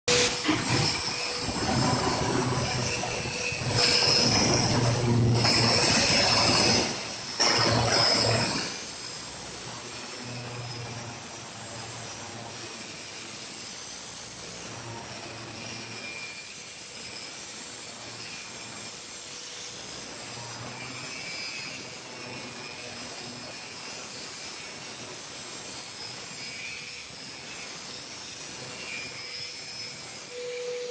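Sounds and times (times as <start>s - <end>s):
vacuum dust extractor: 0.0s - 16.1s, 30.2s - 30.9s
angle grinder running: 0.1s - 16.0s.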